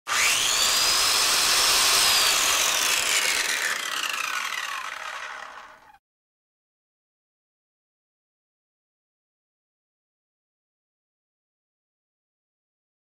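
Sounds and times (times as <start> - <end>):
electric drill grinding whine: 0.1 - 6.0.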